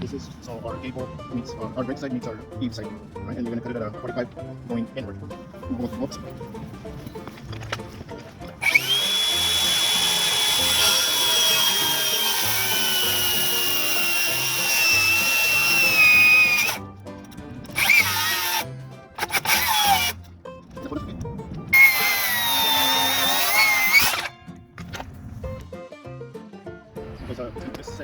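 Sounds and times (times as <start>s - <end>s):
power saw cutting wood: 8.4s - 20.3s, 21.7s - 24.4s.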